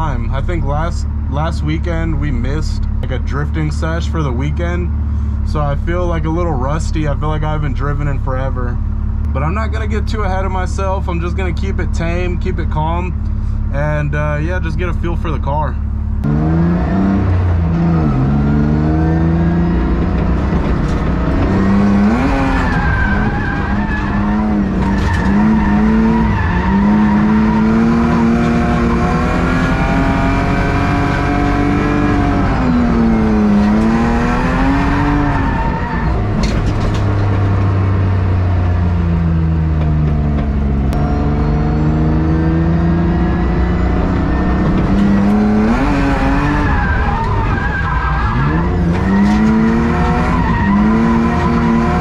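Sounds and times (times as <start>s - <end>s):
car engine revving: 0.0s - 52.0s
tyres squealing: 18.9s - 38.7s, 39.9s - 52.0s.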